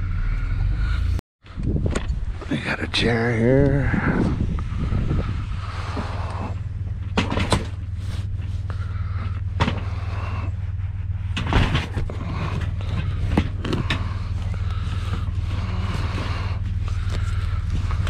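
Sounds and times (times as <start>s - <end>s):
vehicle engine idling: 0.0s - 1.2s, 2.1s - 18.0s
sharp knocks and clunks: 7.0s - 7.8s, 9.6s - 9.9s, 11.4s - 14.1s.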